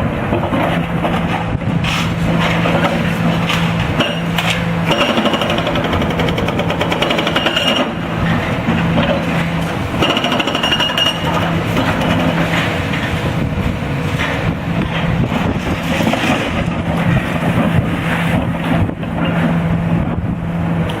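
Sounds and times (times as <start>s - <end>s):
hydraulic breaker pounding concrete: 0.0s - 20.4s.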